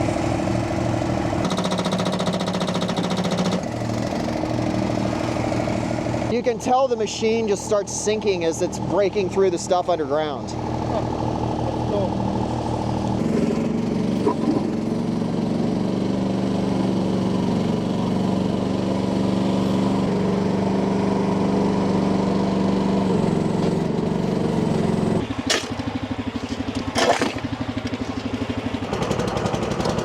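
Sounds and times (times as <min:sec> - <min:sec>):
engine running under load: 0:00.0 - 0:30.0
hydraulic concrete breaker: 0:00.1 - 0:06.3, 0:23.1 - 0:30.0.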